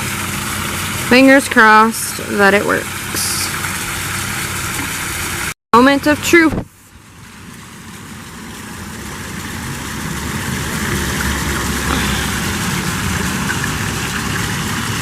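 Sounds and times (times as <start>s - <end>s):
muffled underwater rushing: 10.0s - 15.0s.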